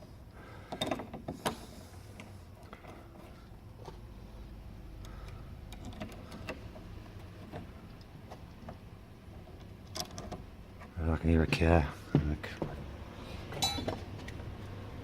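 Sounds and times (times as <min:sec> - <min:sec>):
low steady rumble: 0:01.6 - 0:15.0
metal parts clicking and tapping: 0:05.0 - 0:08.8, 0:09.6 - 0:10.5, 0:13.5 - 0:14.0.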